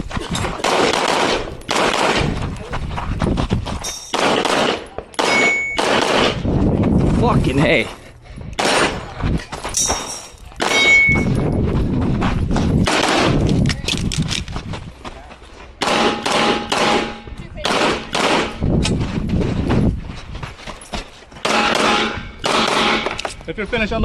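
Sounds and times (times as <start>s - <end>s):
pistol shots: 0.6s - 2.4s, 4.1s - 6.4s, 8.6s - 9.0s, 10.6s - 11.2s, 12.8s - 13.4s, 15.8s - 18.6s, 21.4s - 23.3s.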